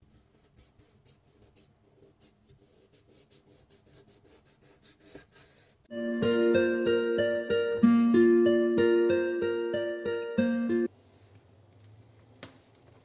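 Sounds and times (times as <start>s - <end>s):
plucked string music: 5.9s - 10.9s.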